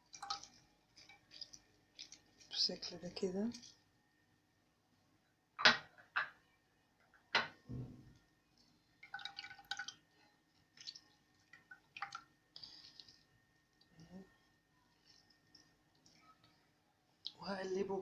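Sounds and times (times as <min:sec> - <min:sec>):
liquid dripping: 0:00.0 - 0:03.9, 0:08.6 - 0:16.6.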